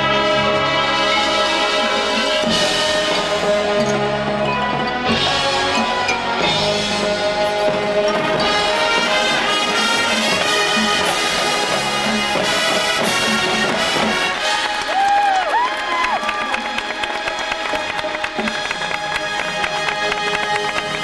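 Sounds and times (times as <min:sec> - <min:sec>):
brass section playing chords: 0:00.0 - 0:15.0
percussion hits: 0:02.4 - 0:15.1, 0:16.2 - 0:21.0.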